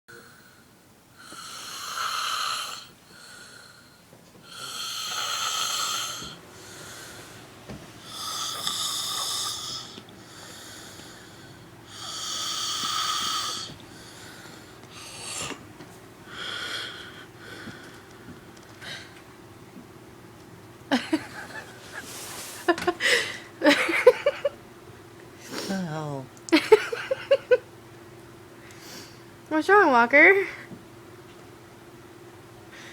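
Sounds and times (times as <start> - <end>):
person snoring: 1.2 - 7.2, 8.1 - 14.4.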